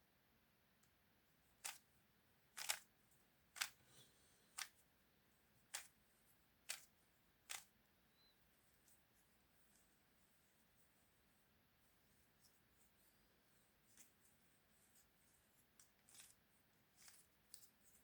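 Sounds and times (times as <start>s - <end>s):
plastic puzzle cube clicking: 1.6s - 1.8s, 2.6s - 2.9s, 3.6s - 3.8s, 5.7s - 6.0s, 6.7s - 6.9s, 7.5s - 7.7s.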